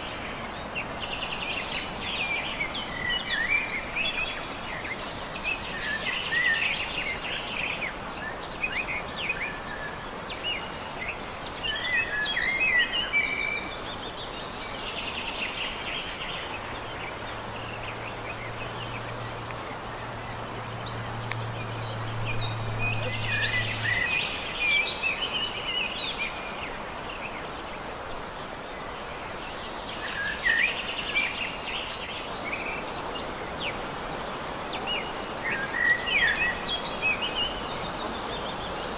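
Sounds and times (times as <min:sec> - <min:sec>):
small birds singing: 0:00.0 - 0:38.9
steady background hiss: 0:00.0 - 0:38.9.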